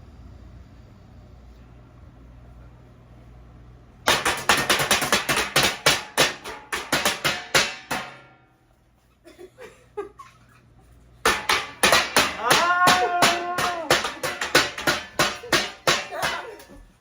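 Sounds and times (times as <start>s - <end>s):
metal pots and pans clanging: 4.1s - 8.3s, 11.2s - 17.0s.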